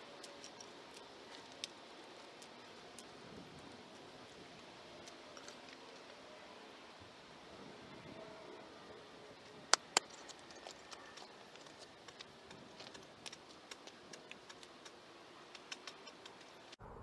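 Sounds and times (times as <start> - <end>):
loud sharp clicks: 9.7 - 11.3.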